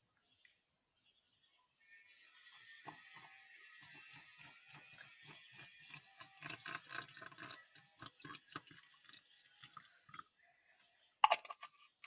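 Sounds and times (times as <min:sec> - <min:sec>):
liquid stirred in a cup: 0:02.3 - 0:10.4, 0:11.2 - 0:12.0.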